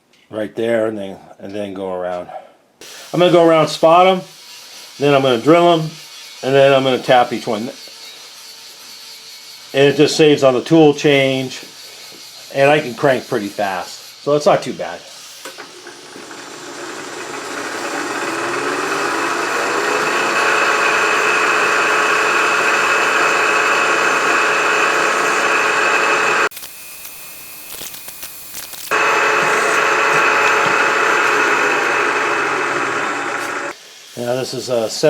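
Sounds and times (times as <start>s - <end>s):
milling machine spindle whining: 15.4s - 33.8s.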